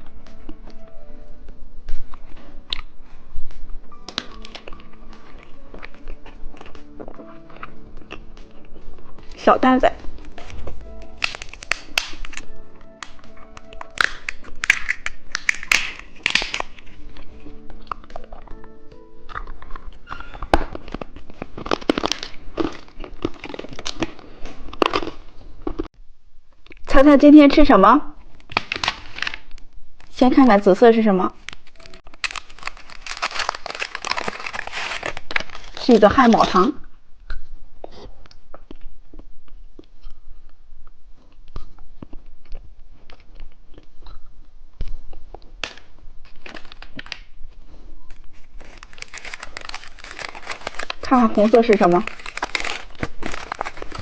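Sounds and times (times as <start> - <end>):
candy crunching while chewed: 1.9 - 3.0, 3.9 - 25.9, 28.4 - 30.2, 31.4 - 54.0
plastic wrapper crinkling and tearing: 1.9 - 25.9, 28.2 - 36.8, 44.8 - 54.0.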